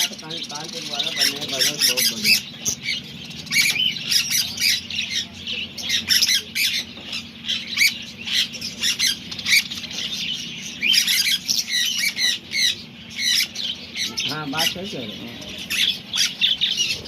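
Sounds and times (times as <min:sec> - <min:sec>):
parrots squawking: 0:00.0 - 0:17.0
steady low hum: 0:00.0 - 0:17.0.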